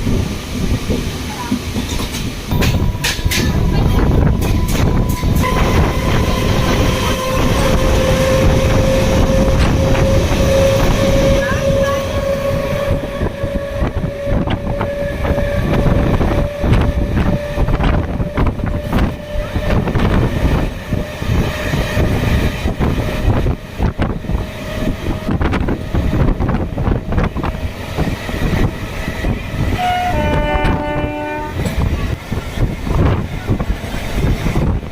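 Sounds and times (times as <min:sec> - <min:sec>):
train rumbling on rails: 0:00.0 - 0:34.9
train horn: 0:03.0 - 0:22.4, 0:29.2 - 0:31.8.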